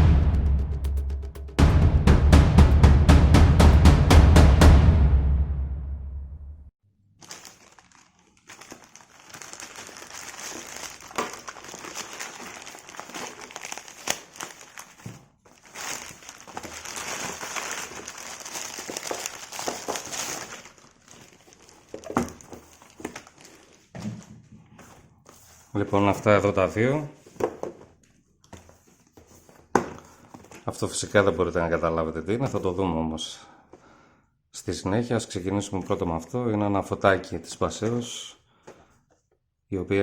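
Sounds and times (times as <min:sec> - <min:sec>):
packaging crinkling and rustling: 0:07.2 - 0:25.8.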